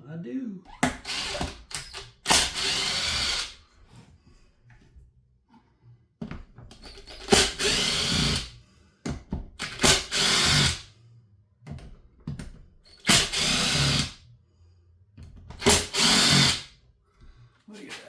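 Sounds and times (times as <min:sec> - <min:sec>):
power screwdriver running: 0:00.8 - 0:03.6, 0:06.8 - 0:08.6, 0:09.6 - 0:10.8, 0:13.0 - 0:14.2, 0:15.6 - 0:16.7.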